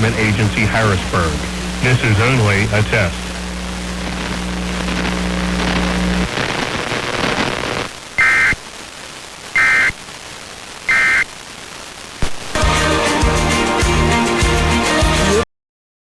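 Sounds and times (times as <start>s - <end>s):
low steady hum: 0.0s - 8.7s
radio hiss and static: 0.0s - 12.6s
data tone bursts: 8.2s - 8.6s, 9.6s - 10.0s, 10.9s - 11.3s.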